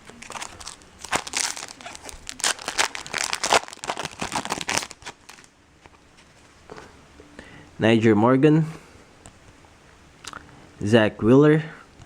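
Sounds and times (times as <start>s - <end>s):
foil wrapper crinkling and tearing: 0.0s - 5.5s.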